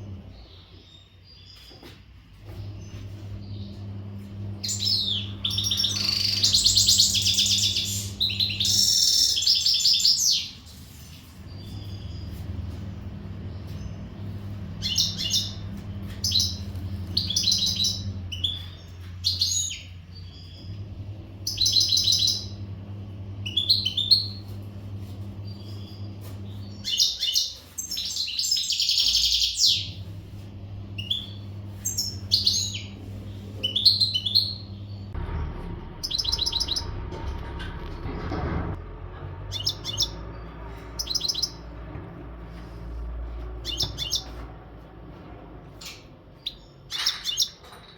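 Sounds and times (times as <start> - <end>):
steady low hum: 2.3 - 9.2, 10.7 - 27.1, 29.4 - 46.5
goldfinch twittering song: 4.6 - 10.6, 14.7 - 20.7, 21.4 - 22.6, 31.0 - 33.0, 36.0 - 37.0, 39.5 - 40.4, 41.0 - 41.7, 43.6 - 44.4.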